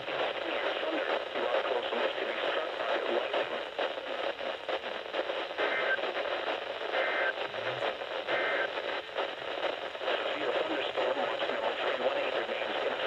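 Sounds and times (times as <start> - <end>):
radio static: 0.0 - 13.0
two-tone data bursts: 5.6 - 6.1, 6.8 - 8.9.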